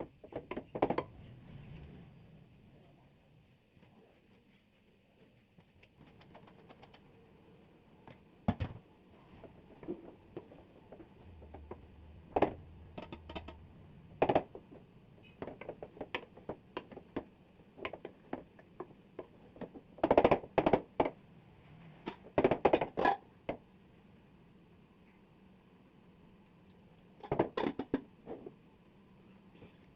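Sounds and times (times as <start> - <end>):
kitchen utensils knocking and clicking: 9.8 - 21.2, 22.1 - 23.2, 27.2 - 28.6
cookware clatter: 27.2 - 28.0.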